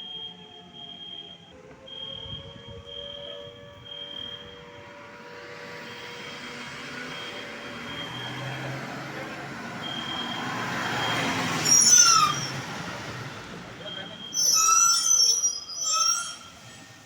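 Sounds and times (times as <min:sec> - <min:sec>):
vehicle passing: 0:04.9 - 0:14.2
short high squeal: 0:11.0 - 0:12.8, 0:13.8 - 0:16.9.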